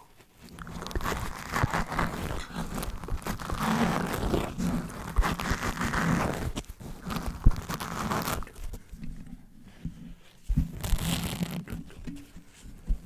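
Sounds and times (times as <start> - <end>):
dry mouth sounds: 0.0 - 9.0
scratching on microphone: 0.0 - 13.0.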